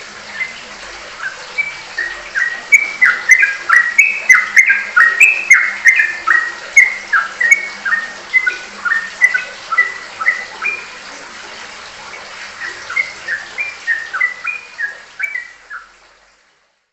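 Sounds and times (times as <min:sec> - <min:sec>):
bird whistled notes: 0:00.3 - 0:00.6, 0:01.2 - 0:11.0, 0:12.6 - 0:15.9.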